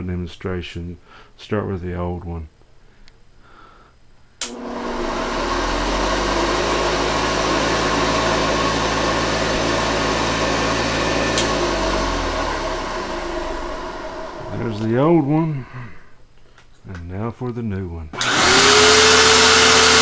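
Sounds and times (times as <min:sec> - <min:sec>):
vacuum switch click: 0:04.4 - 0:05.3, 0:11.1 - 0:12.0
vacuum cleaner motor running: 0:04.4 - 0:16.0, 0:18.2 - 0:20.0.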